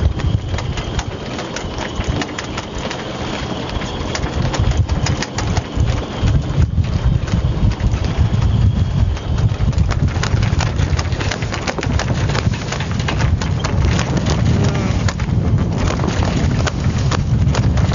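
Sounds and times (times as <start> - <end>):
sharp clicks and knocks: 0.0 - 17.9
wind buffeting microphone: 0.0 - 17.9.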